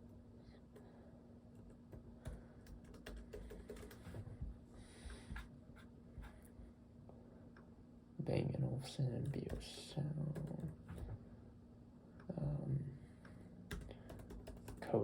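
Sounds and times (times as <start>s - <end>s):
low steady hum: 0.0s - 15.0s
keyboard typing: 1.6s - 4.2s, 13.7s - 14.8s.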